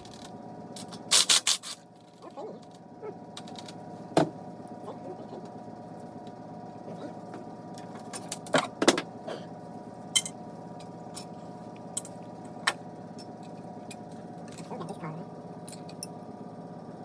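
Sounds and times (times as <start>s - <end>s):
steady background hum: 0.0s - 17.0s
metal parts and tools clinking: 15.6s - 16.1s.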